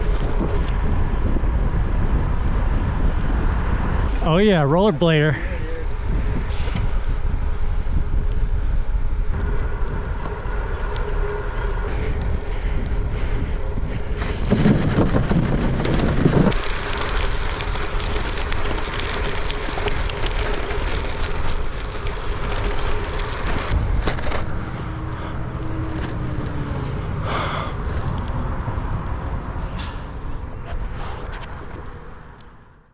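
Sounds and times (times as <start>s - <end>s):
wind rumbling on microphone: 0.0s - 32.9s.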